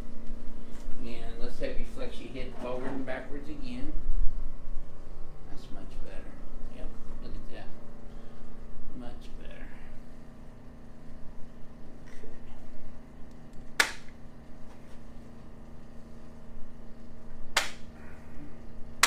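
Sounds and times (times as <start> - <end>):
low room hum: 0.0 - 19.0
sharp short clicks: 13.5 - 14.2.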